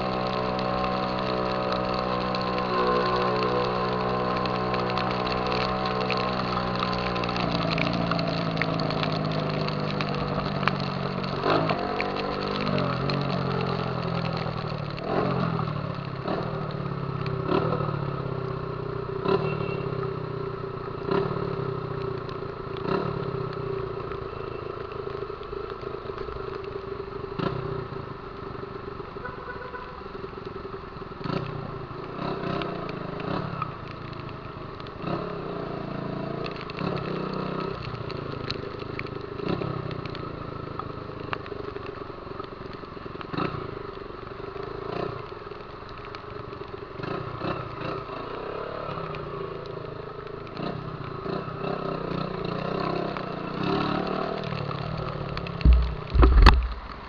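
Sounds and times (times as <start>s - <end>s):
motorcycle engine revving: 50.6s - 57.0s.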